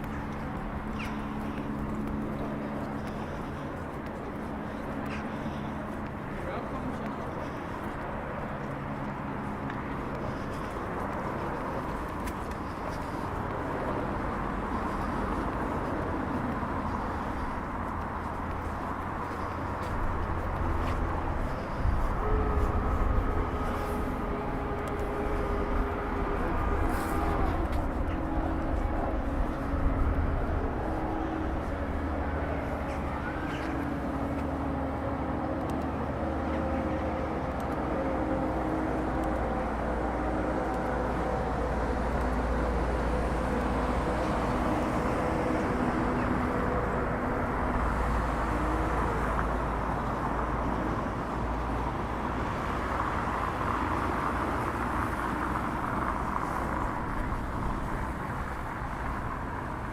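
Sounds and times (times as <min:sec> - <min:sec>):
constant low rumble: 0:00.0 - 0:59.9
held drifting tones: 0:10.1 - 0:34.8.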